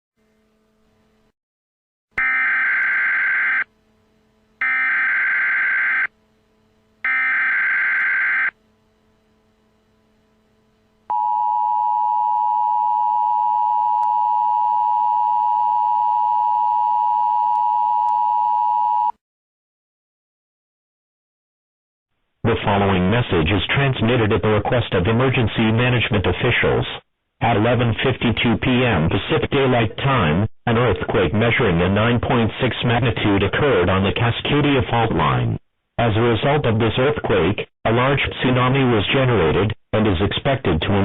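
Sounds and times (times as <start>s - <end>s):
two-tone alarm: 2.2s - 3.7s, 4.6s - 6.1s, 7.0s - 8.6s.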